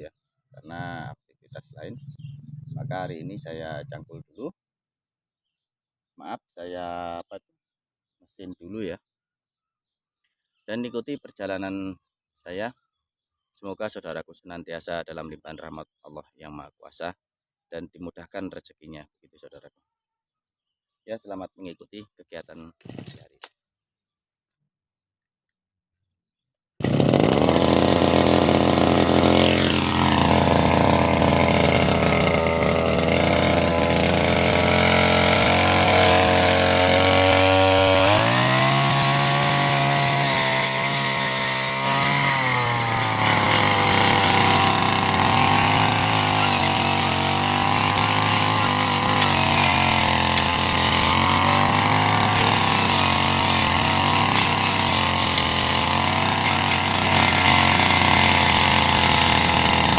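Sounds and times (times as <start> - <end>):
brush cutter engine running: 26.8 - 59.9.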